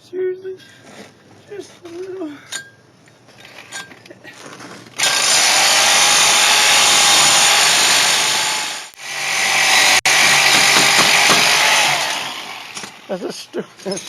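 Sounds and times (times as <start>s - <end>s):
power saw cutting steel: 5.0s - 13.1s.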